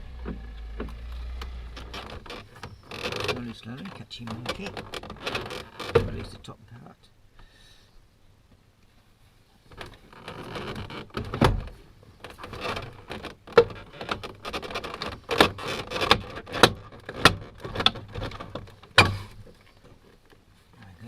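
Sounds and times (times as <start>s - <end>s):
plastic panel scraping: 0.0s - 6.3s.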